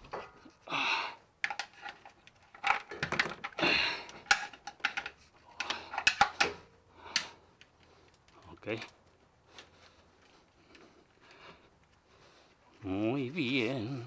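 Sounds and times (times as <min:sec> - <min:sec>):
metal parts and tools clinking: 0:01.4 - 0:06.6.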